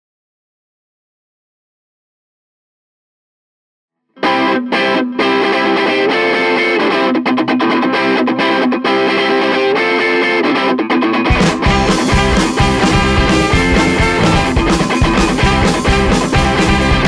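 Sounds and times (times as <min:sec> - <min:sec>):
distorted electric guitar riff: 0:04.2 - 0:17.0.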